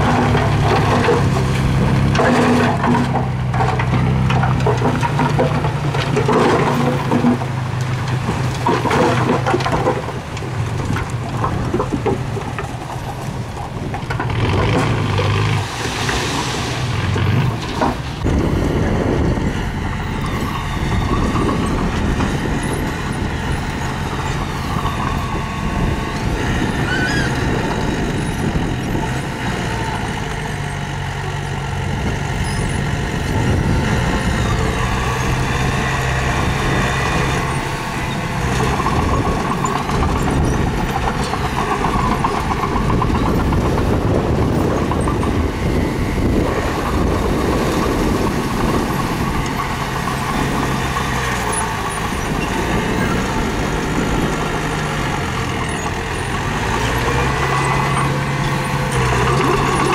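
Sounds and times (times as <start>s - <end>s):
diesel engine running under load: 0.0s - 59.9s.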